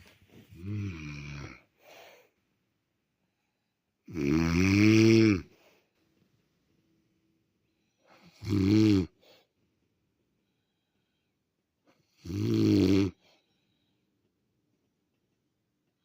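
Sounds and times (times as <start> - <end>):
woman snoring: 0.6 - 1.7, 4.1 - 5.5, 8.2 - 9.2, 12.2 - 13.2.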